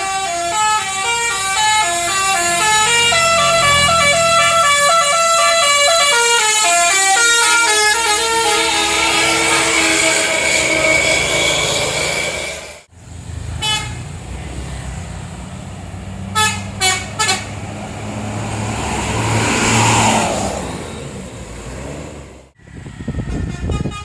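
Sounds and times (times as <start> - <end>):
bus musical air horn: 0.0 - 12.5, 13.6 - 14.1, 16.3 - 17.7, 23.0 - 24.0
bus engine running: 0.0 - 22.6.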